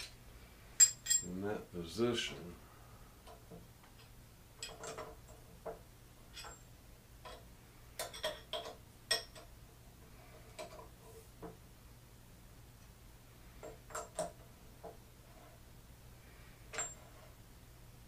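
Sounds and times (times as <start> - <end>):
faint steady hum: 0.0 - 18.0
metallic clicks and clinks: 0.8 - 1.4, 6.3 - 7.4.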